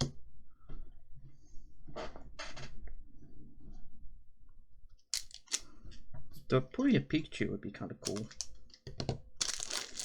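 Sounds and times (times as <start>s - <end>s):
trading cards swishing and rustling: 5.2s - 5.7s, 9.4s - 10.0s.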